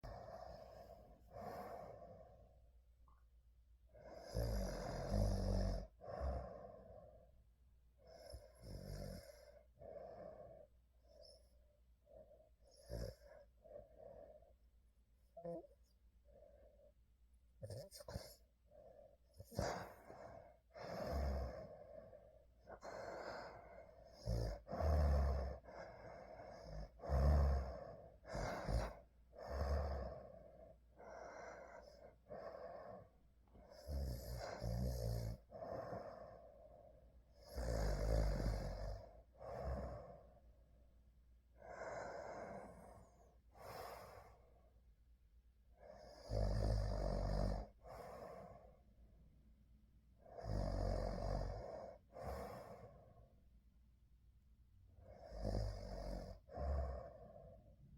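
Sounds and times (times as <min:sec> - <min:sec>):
person snoring: 0:04.1 - 0:06.9, 0:22.7 - 0:30.4, 0:33.7 - 0:36.4, 0:37.4 - 0:40.2.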